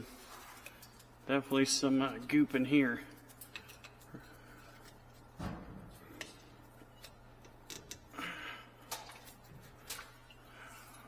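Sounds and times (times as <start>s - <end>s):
steady low hum: 0.0s - 11.0s
metal tools clicking and tapping: 3.1s - 5.2s, 6.1s - 8.1s.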